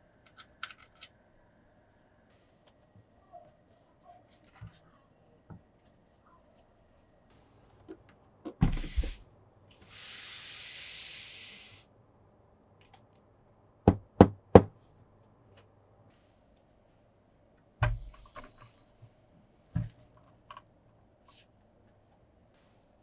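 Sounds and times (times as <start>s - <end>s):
hardware rustling thump: 8.5s - 9.2s
high hiss: 8.6s - 9.2s, 9.8s - 11.9s.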